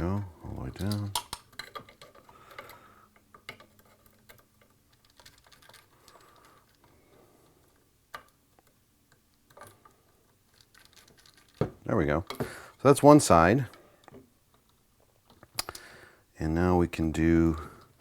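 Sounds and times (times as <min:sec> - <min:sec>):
screwdriver and metal parts clicking: 0:00.1 - 0:06.9, 0:07.7 - 0:12.5.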